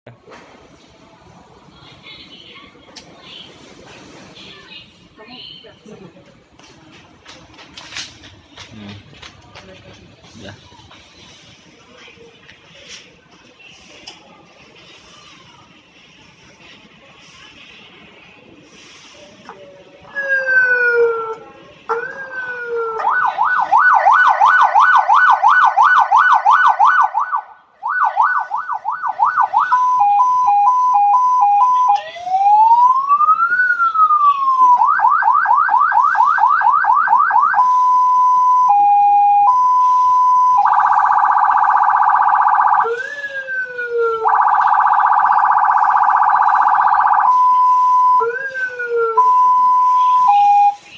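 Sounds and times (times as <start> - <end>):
police siren yelp and wail: 20.1 - 50.8.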